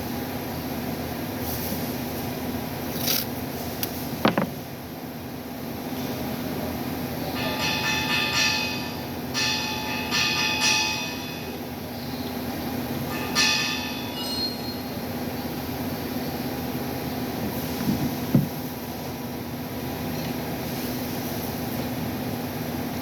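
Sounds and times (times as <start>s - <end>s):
high-pitched metallic squealing: 13.1s - 15.0s.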